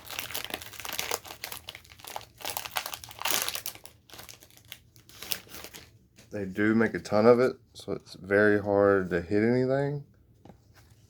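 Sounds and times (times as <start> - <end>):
cards and plastic packaging rustling: 0.0 - 6.5.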